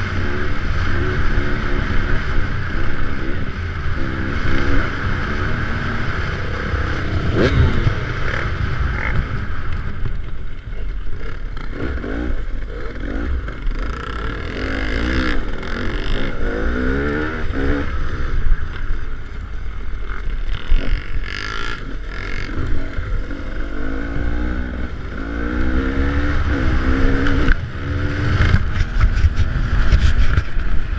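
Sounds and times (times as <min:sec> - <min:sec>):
vehicle engine revving: 0:00.0 - 0:10.0, 0:20.6 - 0:30.7
wind buffeting microphone: 0:26.3 - 0:30.9.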